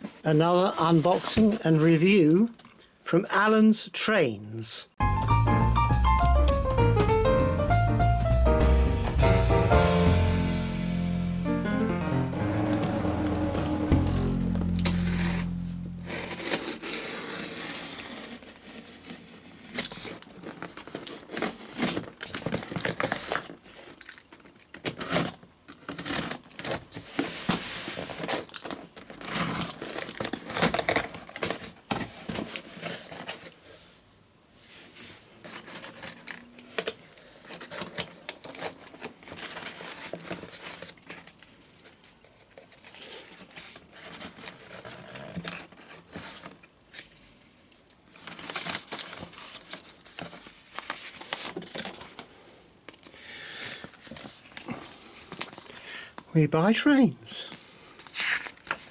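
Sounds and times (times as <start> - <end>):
packaging rustling and tearing: 14.2 - 33.8, 35.2 - 52.3, 53.0 - 56.3, 57.5 - 58.9.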